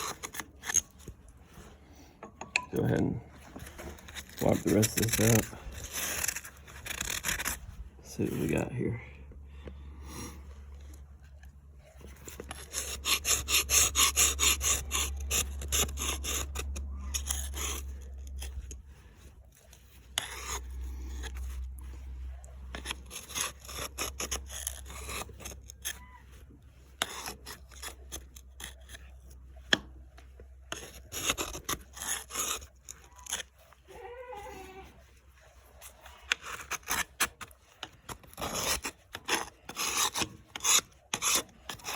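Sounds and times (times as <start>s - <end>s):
metal scraping on metal: 0.0s - 8.6s
low steady hum: 0.0s - 41.9s.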